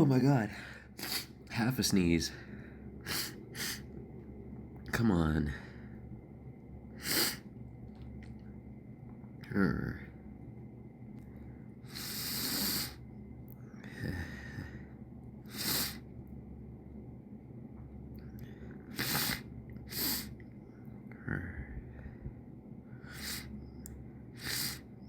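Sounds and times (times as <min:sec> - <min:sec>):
low steady hum: 0:00.0 - 0:25.0
person sniffling: 0:01.0 - 0:01.4, 0:03.0 - 0:03.9, 0:07.0 - 0:07.4, 0:15.5 - 0:16.0, 0:18.9 - 0:20.4, 0:23.0 - 0:23.5, 0:24.4 - 0:24.9.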